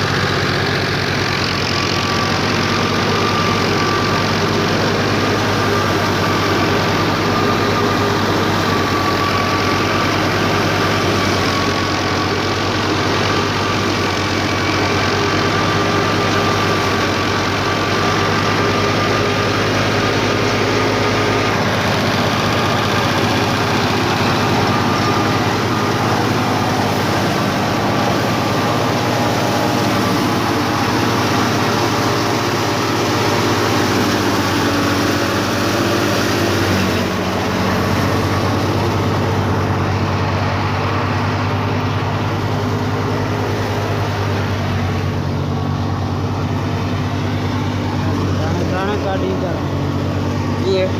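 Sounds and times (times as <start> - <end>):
thresher machine drone: 0.0 - 50.9.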